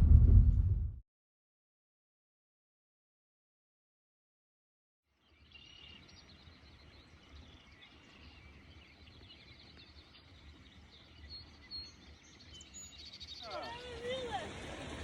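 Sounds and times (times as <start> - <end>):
low steady rumble: 0.0 - 1.0
small birds chirping: 5.1 - 14.7.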